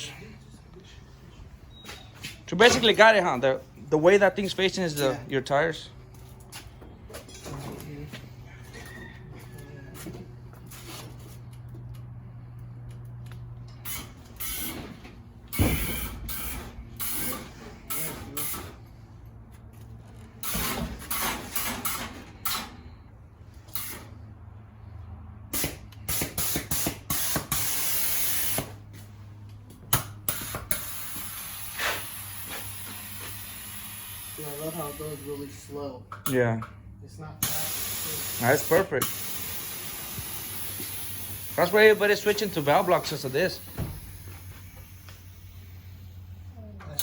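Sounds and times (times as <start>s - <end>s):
air suspension hissing: 13.8s - 19.0s, 30.3s - 35.5s, 37.4s - 46.5s.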